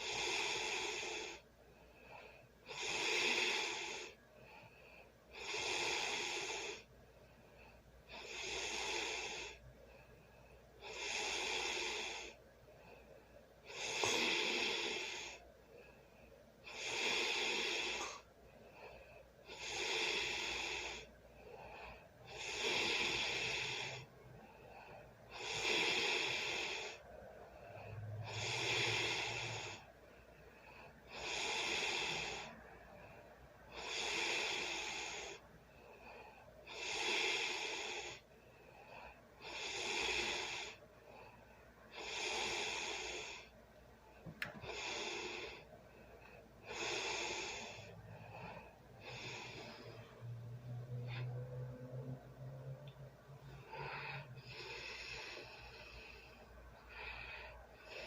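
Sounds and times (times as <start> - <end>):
person snoring: 0.0 - 1.4, 2.7 - 4.2, 5.3 - 6.9, 8.1 - 9.6, 10.8 - 12.4, 13.7 - 15.4, 16.7 - 18.2, 19.4 - 21.1, 22.3 - 24.1, 25.3 - 27.0, 27.7 - 29.9, 31.1 - 32.7, 33.7 - 35.4, 36.7 - 38.2, 39.4 - 40.8, 41.9 - 43.5, 46.6 - 58.0.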